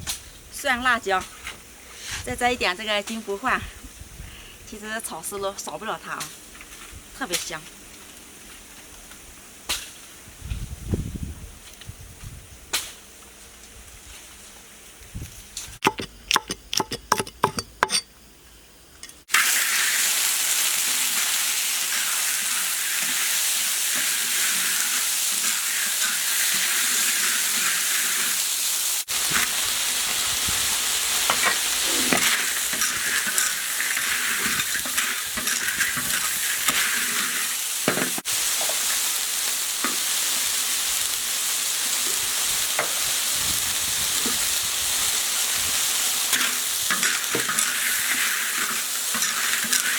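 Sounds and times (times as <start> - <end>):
stir-fry sizzling in a wok: 19.2 - 49.9
stirring in a wok: 20.7 - 43.3, 44.1 - 49.9.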